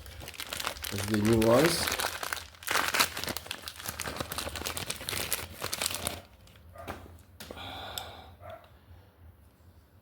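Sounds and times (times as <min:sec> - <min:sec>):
packaging crinkling and rustling: 0:00.0 - 0:07.5.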